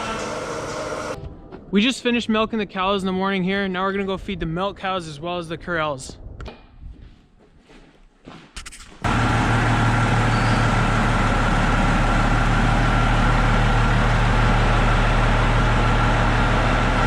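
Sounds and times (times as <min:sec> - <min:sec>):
thin high whine: 0:00.0 - 0:01.2, 0:09.9 - 0:10.9
tractor engine running: 0:00.0 - 0:01.2, 0:09.0 - 0:17.0.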